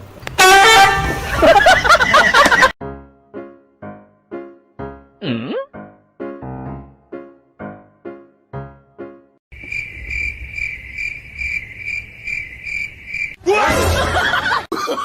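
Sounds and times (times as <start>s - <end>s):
piano notes: 2.8s - 9.4s
cricket chirping: 9.5s - 13.4s.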